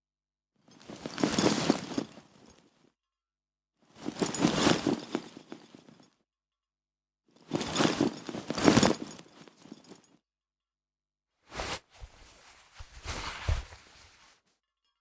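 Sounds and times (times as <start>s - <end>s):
fabric rustling: 11.5s - 14.4s.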